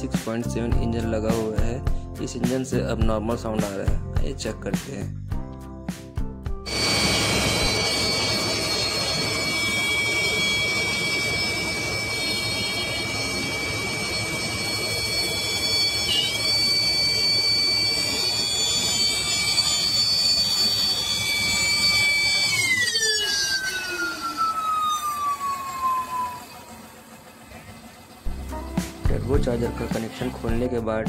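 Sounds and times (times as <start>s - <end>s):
high-pitched turbo whine: 6.6s - 30.8s
diesel engine running: 6.7s - 22.9s, 24.1s - 30.7s.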